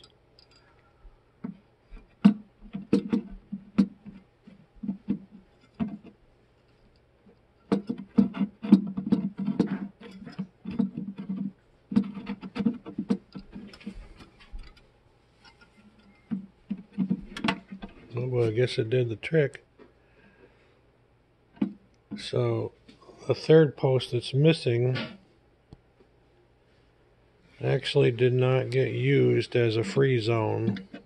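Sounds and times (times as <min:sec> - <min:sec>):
hard plastic clicking and knocking: 0:01.4 - 0:04.2, 0:07.7 - 0:14.8.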